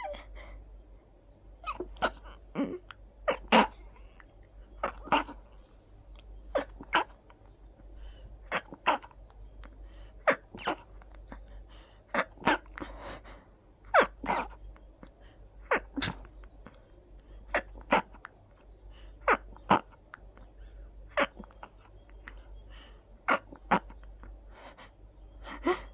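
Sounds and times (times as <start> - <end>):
person sneezing: 0.0 - 0.2.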